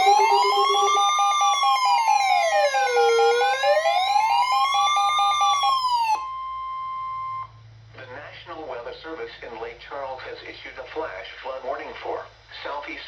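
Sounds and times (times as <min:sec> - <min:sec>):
rapid beeping tones: 0:00.0 - 0:04.0
emergency siren wailing: 0:00.0 - 0:07.5.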